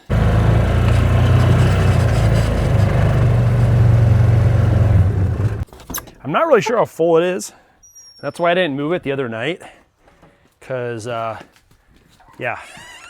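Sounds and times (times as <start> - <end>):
vehicle engine rumbling: 0.0 - 5.7.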